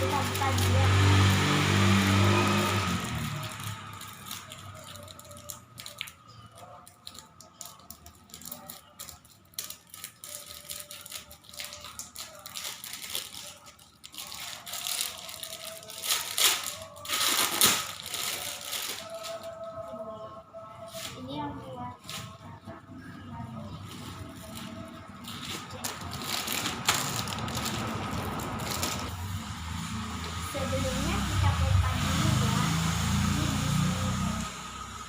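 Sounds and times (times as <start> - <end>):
plastic packaging crinkling: 0.0 - 1.2, 2.3 - 19.6, 23.8 - 29.6.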